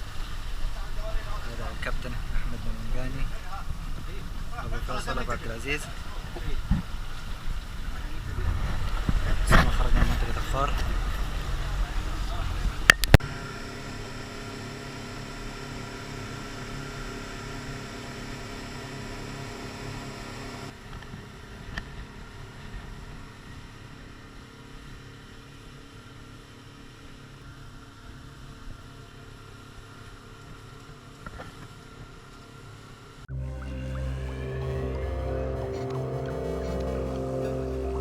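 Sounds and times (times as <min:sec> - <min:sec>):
boat engines humming: 0:33.3 - 0:38.0.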